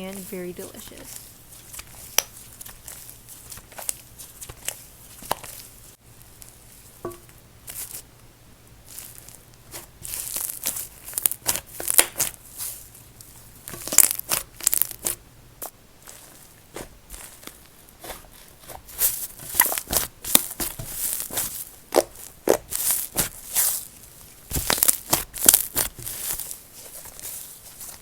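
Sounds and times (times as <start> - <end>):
slime crackling and popping: 0.8 - 8.0, 8.8 - 28.0.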